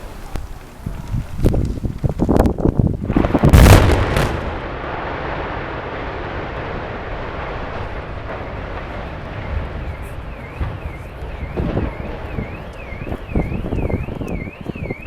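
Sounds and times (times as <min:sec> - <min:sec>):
demolition blast: 0:02.2 - 0:15.0
low rumble: 0:03.2 - 0:14.2.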